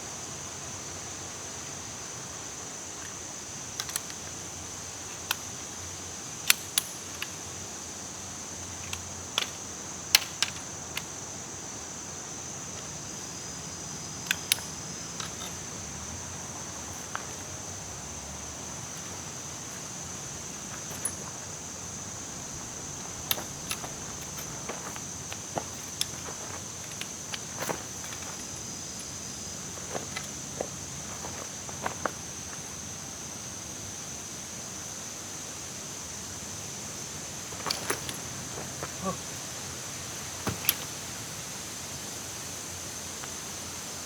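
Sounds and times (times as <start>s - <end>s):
high-pitched hiss: 0.0s - 44.0s.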